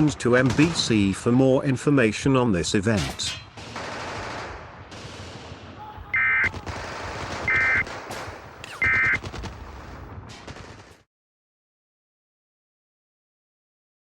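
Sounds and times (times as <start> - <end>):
continuous gunfire: 0.0 - 1.4, 3.1 - 11.1
warbling data bursts: 6.2 - 6.6, 7.4 - 7.9, 8.7 - 9.3.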